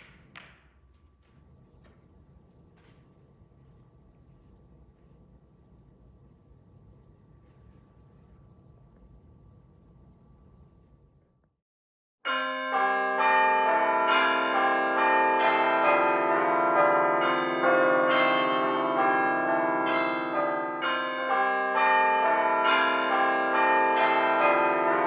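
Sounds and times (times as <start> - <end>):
church bells ringing: 12.2 - 25.0.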